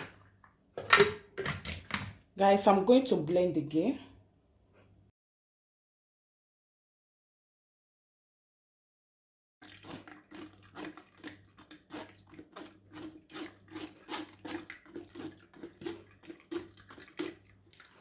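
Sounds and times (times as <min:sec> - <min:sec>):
liquid splashes and drips: 0:09.6 - 0:18.0.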